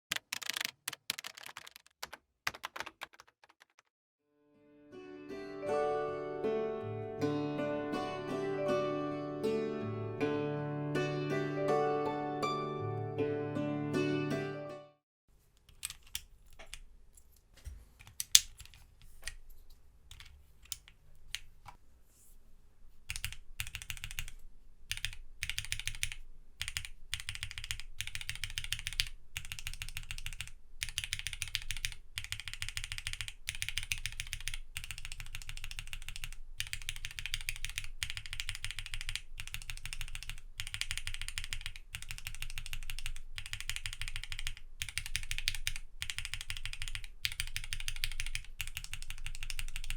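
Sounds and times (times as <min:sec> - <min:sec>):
mechanical keyboard typing: 0:00.1 - 0:03.9, 0:15.7 - 0:16.9, 0:18.0 - 0:19.4, 0:20.1 - 0:21.5, 0:23.1 - 0:49.9.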